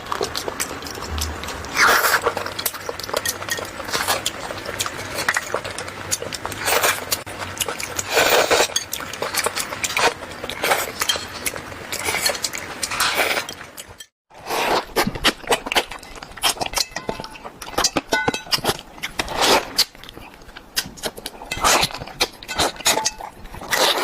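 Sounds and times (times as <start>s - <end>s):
wet chewing and mouth sounds: 0.0s - 24.0s
cutlery clinking against a dish: 16.0s - 18.8s, 21.5s - 24.0s.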